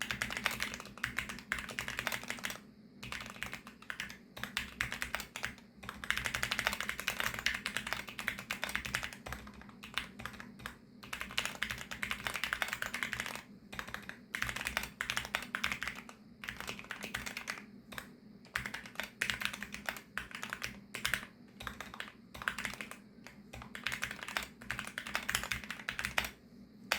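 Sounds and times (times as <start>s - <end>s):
fast typing on mechanical keyboard: 0.0s - 26.4s.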